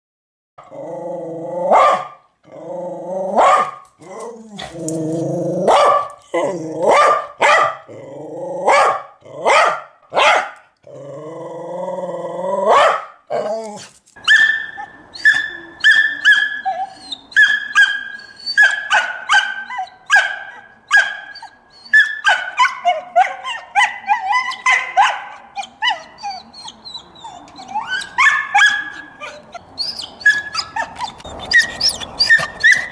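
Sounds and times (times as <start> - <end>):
dog barking and yapping: 1.7 - 2.2, 3.4 - 7.9, 8.7 - 10.6, 12.7 - 16.8, 17.4 - 21.4, 22.0 - 26.7, 27.4 - 32.9.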